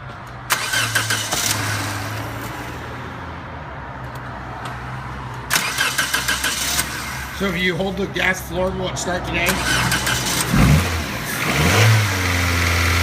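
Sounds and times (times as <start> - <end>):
car engine cranking and running: 0.5 - 2.6, 5.5 - 7.5, 9.4 - 13.0.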